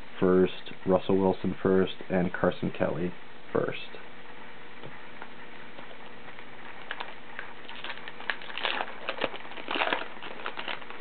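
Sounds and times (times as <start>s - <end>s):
cards rustling and clicking: 5.8s - 11.0s
wrapper crinkling and tearing: 6.4s - 11.0s.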